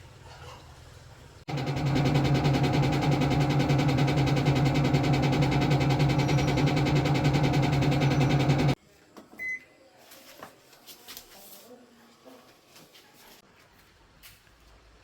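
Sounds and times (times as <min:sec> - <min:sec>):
washing machine humming: 0:01.5 - 0:08.8.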